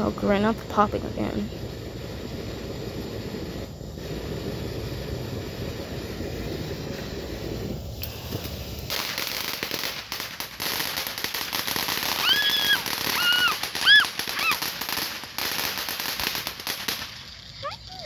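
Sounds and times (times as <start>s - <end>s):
firework crackling and popping: 0.0s - 18.0s
short high rising cries: 12.1s - 14.7s.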